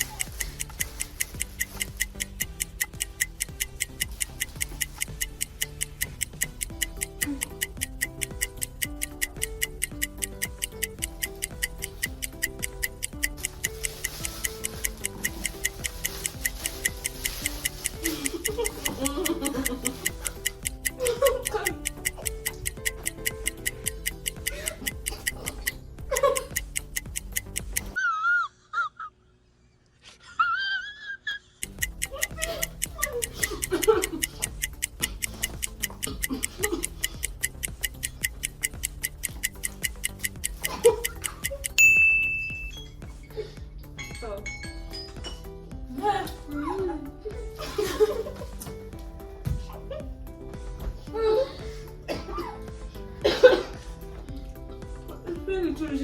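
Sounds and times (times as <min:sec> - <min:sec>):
music with ticking beat: 0:00.0 - 0:28.0, 0:31.6 - 0:56.0
person's voice: 0:55.1 - 0:56.0.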